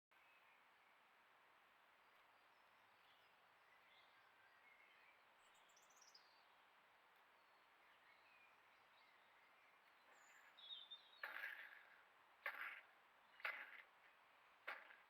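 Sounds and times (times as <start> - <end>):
outdoor background hiss: 0.2 - 11.2
distant bird chirps: 7.2 - 15.0.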